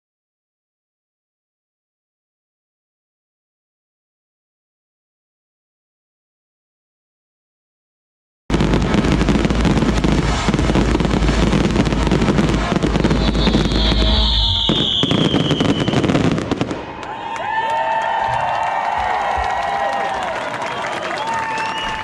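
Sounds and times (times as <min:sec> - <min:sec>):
deep rumbling booms: 0:08.5 - 0:15.5, 0:21.8 - 0:22.0
fireworks crackling and bangs: 0:08.5 - 0:17.2, 0:21.2 - 0:22.0
falling firework whistle: 0:08.5 - 0:17.6, 0:20.1 - 0:22.0
crowd voices: 0:18.9 - 0:22.0.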